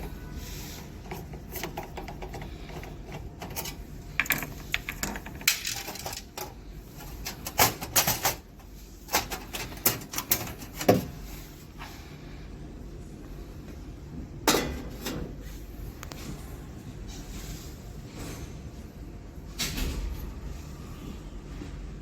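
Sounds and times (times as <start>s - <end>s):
copier parts clicking and knocking: 0.9s - 11.2s.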